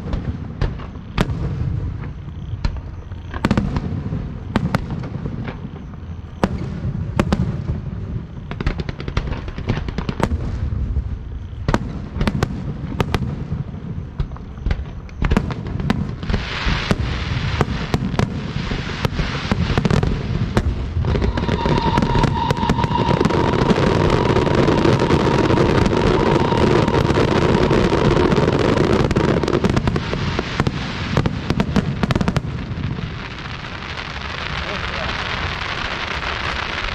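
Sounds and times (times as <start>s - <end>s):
crackling firework bursts: 0.0s - 36.9s
fireworks bangs: 0.0s - 36.9s
firework whistle: 16.3s - 36.9s.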